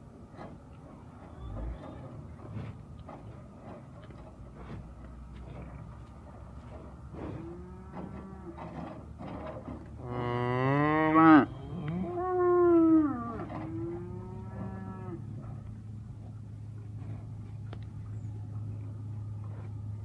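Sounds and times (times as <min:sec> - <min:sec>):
cows mooing: 0:07.3 - 0:08.9, 0:10.0 - 0:15.6.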